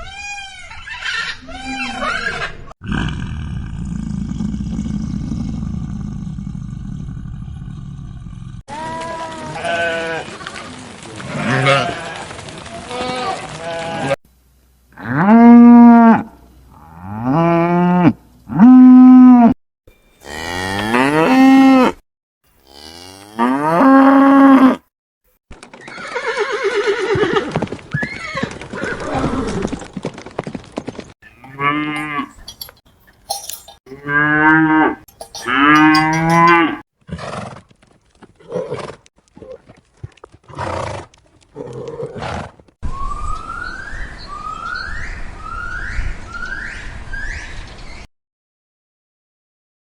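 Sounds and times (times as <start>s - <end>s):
farm animals calling: 0.0s - 2.7s, 20.0s - 21.8s, 22.5s - 24.8s, 31.2s - 36.8s.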